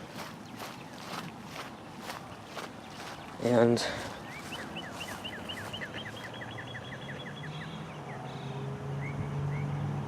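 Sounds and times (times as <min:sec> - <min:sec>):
songbird singing whistled notes: 0:04.2 - 0:09.8.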